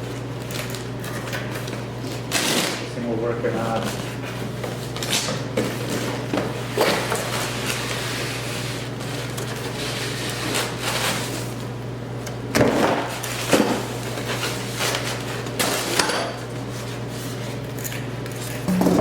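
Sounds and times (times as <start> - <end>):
low hum: 18.7 - 19.0.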